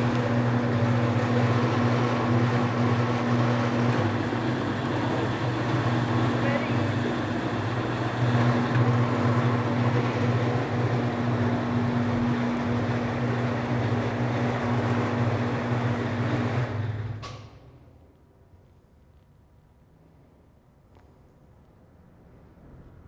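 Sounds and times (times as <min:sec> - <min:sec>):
electric motor humming: 0:00.0 - 0:17.0
motor winding down: 0:00.0 - 0:17.2.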